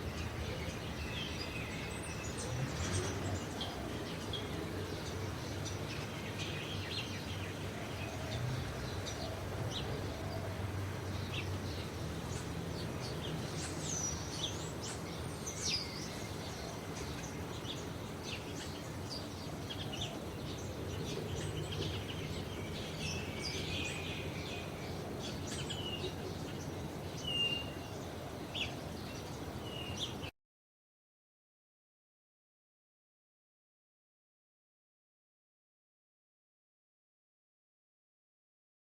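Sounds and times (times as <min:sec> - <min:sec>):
small birds chirping: 0:00.0 - 0:30.3
sweeping bird calls: 0:00.0 - 0:30.3.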